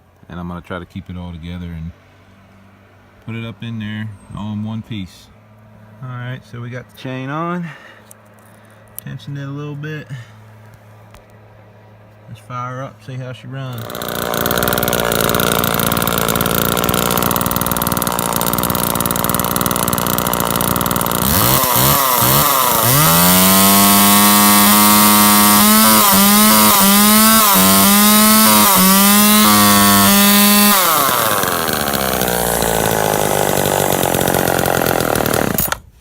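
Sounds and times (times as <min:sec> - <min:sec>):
chainsaw revving and idling: 0:13.7 - 0:35.9.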